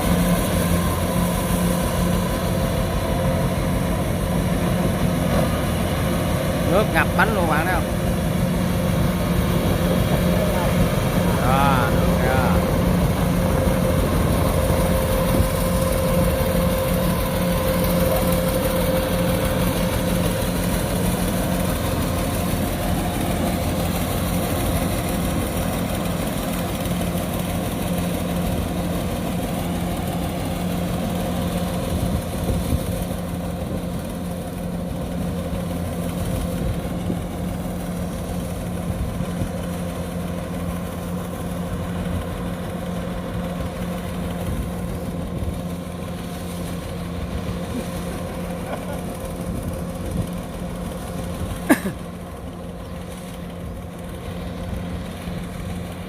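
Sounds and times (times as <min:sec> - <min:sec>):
high whine: 0:00.0 - 0:39.7
combine harvester engine running: 0:00.0 - 0:56.0.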